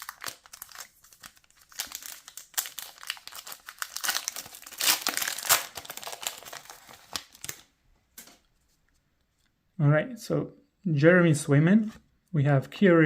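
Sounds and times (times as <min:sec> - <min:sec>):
foil wrapper crinkling: 0:00.0 - 0:07.7.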